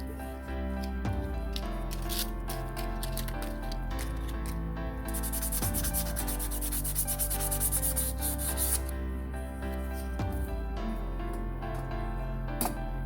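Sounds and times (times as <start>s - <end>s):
background music: 0.0s - 13.0s
sandpaper rubbing back and forth: 5.1s - 8.9s.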